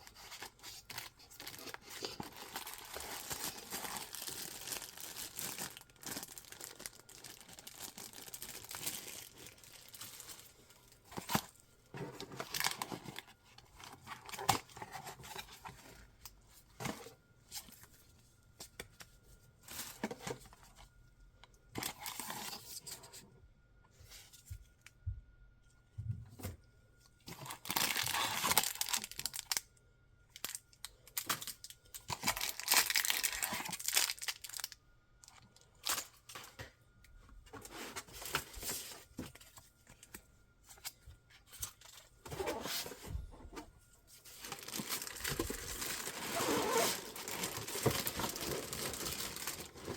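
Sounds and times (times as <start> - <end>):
packaging tearing and crinkling: 0.0 - 10.5, 12.2 - 15.6, 27.3 - 29.6, 31.2 - 34.7, 44.3 - 49.9.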